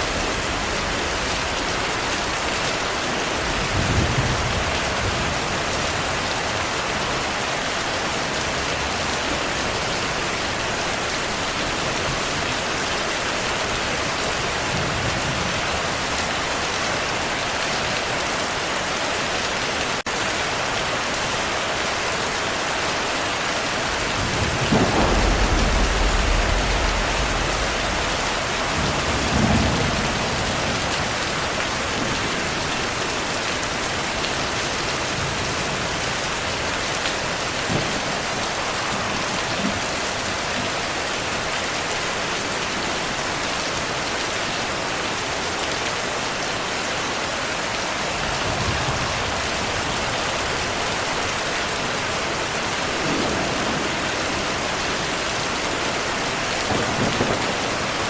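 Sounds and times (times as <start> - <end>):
heavy rain: 0.0 - 58.0
distant thunder rumbling: 23.8 - 33.1, 52.9 - 55.5, 56.6 - 58.0.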